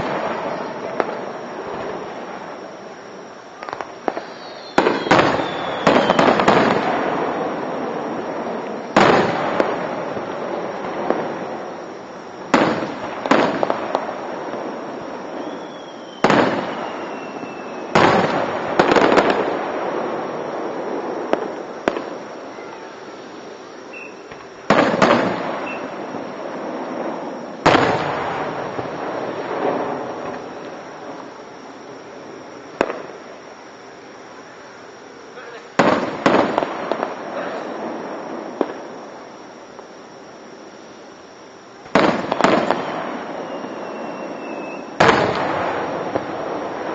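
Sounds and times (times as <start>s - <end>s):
fireworks bangs with rumbling echo: 0.0s - 33.8s, 35.4s - 40.6s, 41.3s - 46.9s
faint whistling tone gliding down: 0.4s - 6.4s, 15.0s - 18.0s, 22.0s - 24.6s, 25.5s - 27.6s, 42.3s - 45.0s.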